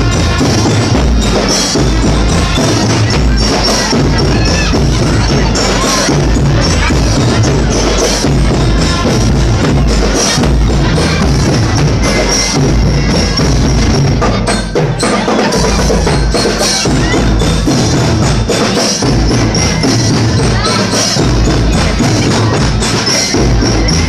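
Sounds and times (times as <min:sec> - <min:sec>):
music with wooden percussion and bass: 0:00.0 - 0:24.0.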